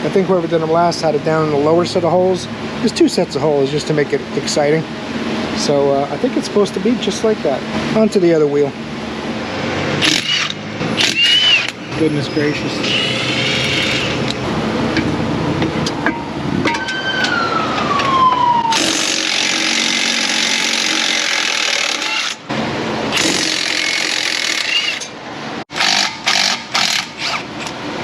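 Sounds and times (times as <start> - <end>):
falling whine: 10.8 - 19.2.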